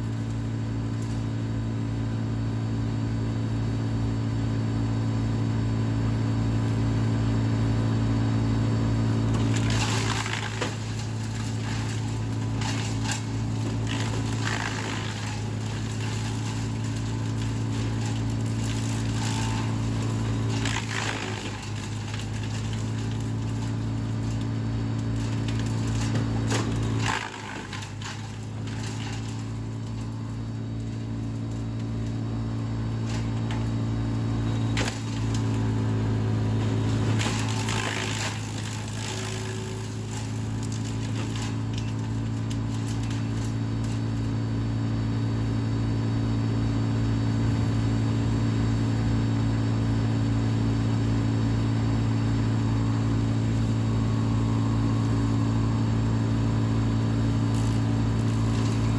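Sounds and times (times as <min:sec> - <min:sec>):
wood chipper running: 0:00.0 - 0:58.9
branches crackling in chipper: 0:05.8 - 0:58.9.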